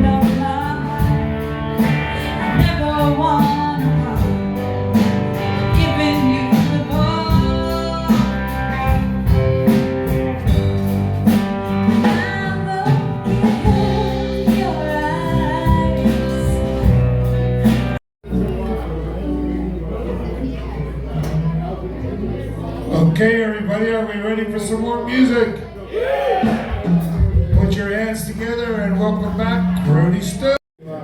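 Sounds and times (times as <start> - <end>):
person singing: 0.0 - 4.6, 5.4 - 9.0, 12.0 - 16.9
guitar: 0.0 - 23.2.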